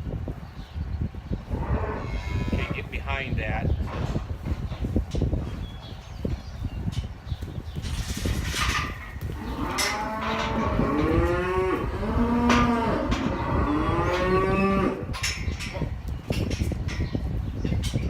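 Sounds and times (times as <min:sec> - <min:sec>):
calves bawling: 0:01.4 - 0:03.9, 0:05.7 - 0:18.0
knocks and clatter: 0:07.0 - 0:11.3.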